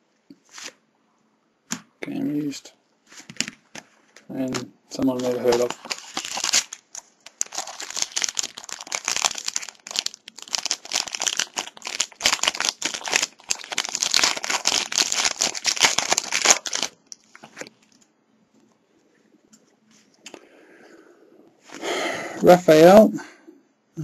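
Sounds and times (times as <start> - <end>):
wrapper crinkling and tearing: 5.2 - 18.0.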